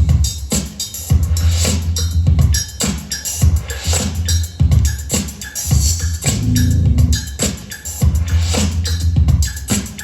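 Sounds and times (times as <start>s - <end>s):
funk dance track: 5.8s - 7.7s.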